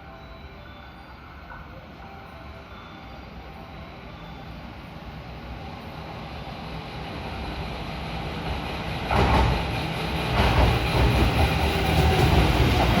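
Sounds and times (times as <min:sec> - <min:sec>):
electric train approaching on rails: 0:00.0 - 0:13.0.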